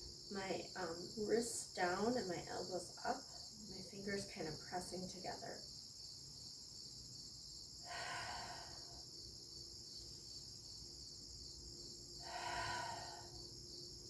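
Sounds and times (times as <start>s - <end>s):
crickets chirping: 0.0s - 14.0s
long breaths: 7.8s - 9.4s, 12.1s - 14.0s.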